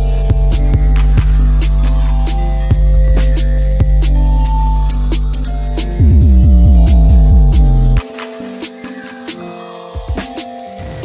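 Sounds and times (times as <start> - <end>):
music with steady beat: 0.0 - 11.0
bass line of falling notes: 6.0 - 8.0.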